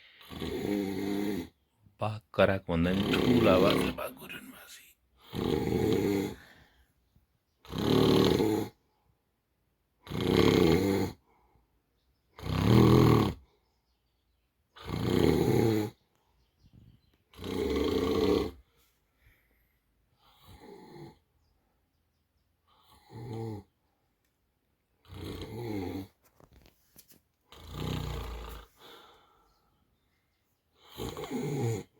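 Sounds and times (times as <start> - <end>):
man snoring: 0.1 - 1.6, 2.4 - 6.6, 7.6 - 8.8, 10.0 - 11.2, 12.4 - 13.5, 14.8 - 16.0, 17.3 - 18.7, 20.4 - 21.2, 22.9 - 23.7, 25.0 - 26.1, 27.5 - 29.1, 30.8 - 31.9.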